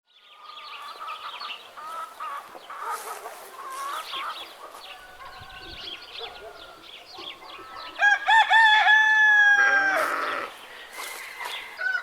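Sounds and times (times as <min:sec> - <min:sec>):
chickens clucking: 0:00.4 - 0:08.1.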